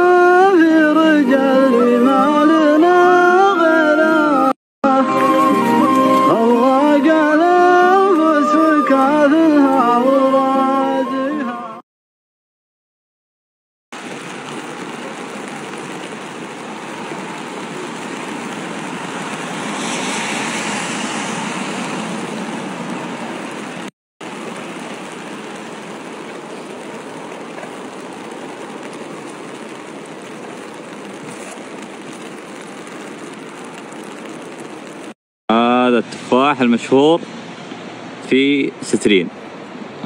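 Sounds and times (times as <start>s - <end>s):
heavy rain: 0.0s - 10.8s, 13.9s - 35.2s.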